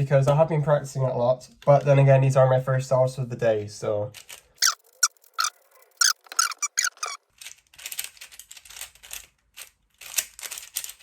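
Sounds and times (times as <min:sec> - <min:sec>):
plastic puzzle cube clicking: 0:04.2 - 0:11.0.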